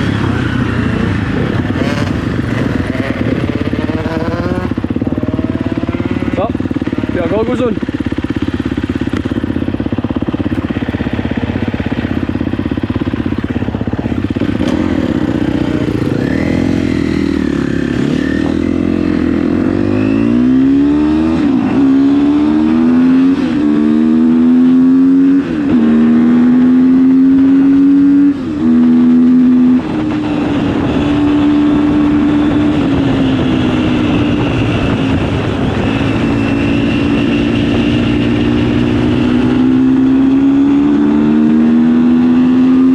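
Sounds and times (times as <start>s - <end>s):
dirt bike engine revving: 0.0s - 42.9s.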